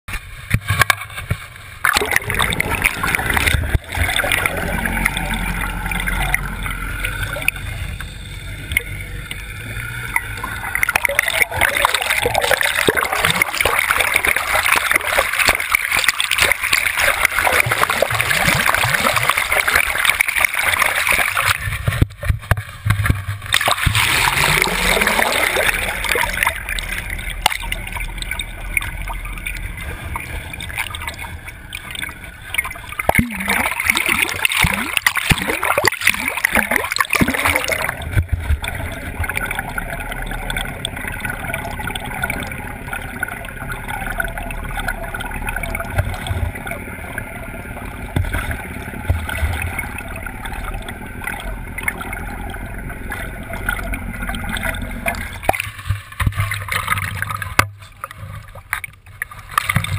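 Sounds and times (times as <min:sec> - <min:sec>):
water gurgling and splashing: 0:00.1 - 0:59.9.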